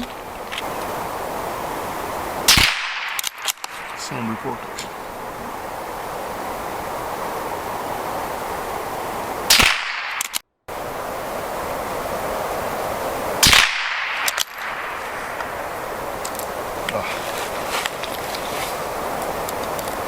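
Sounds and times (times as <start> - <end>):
steady background noise: 0.0 - 20.0
suppressed rifle shots: 2.5 - 4.9, 9.5 - 10.4, 13.4 - 15.6.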